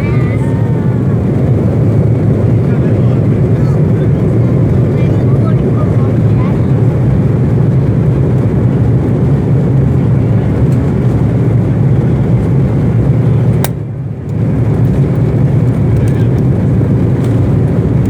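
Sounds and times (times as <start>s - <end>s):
airliner cabin roar: 0.0s - 18.0s.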